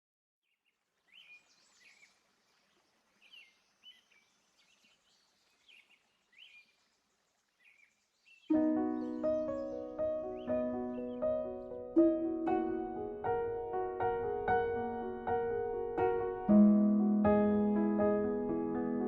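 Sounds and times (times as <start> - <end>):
bird chirping: 0.4 - 16.7
background hiss: 0.6 - 16.8
loud piano-like music: 8.5 - 19.0.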